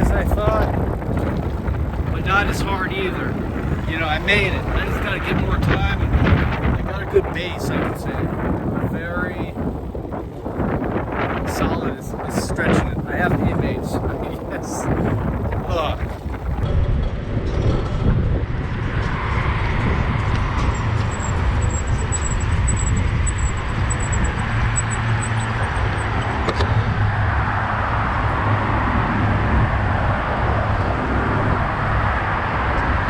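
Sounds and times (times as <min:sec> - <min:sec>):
road noise: 0:00.0 - 0:33.0
wind rumble on microphone: 0:00.0 - 0:33.0
faint high pulsing tone: 0:18.9 - 0:26.4.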